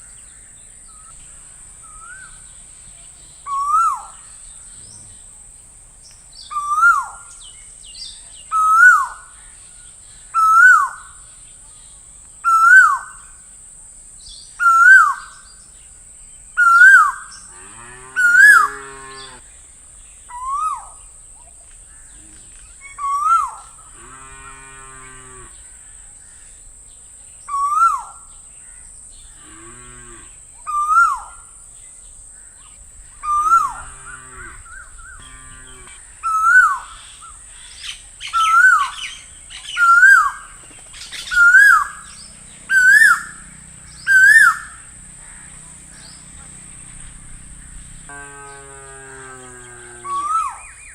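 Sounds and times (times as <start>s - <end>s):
deeper buzzy bird call: 16.6s - 19.5s, 33.1s - 50.9s
bird whistled swooping call: 41.2s - 42.0s, 44.1s - 44.8s.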